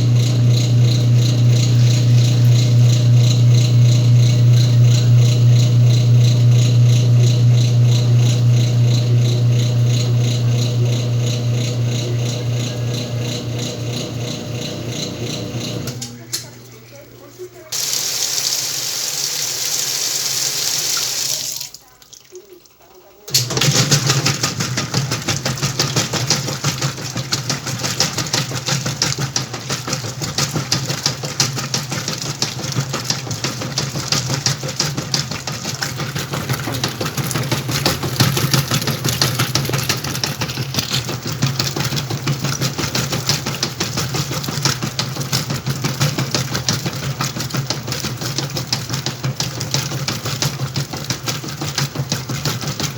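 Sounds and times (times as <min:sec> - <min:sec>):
washing machine motor humming: 0:00.0 - 0:52.9
water rushing into tub: 0:17.6 - 0:52.9.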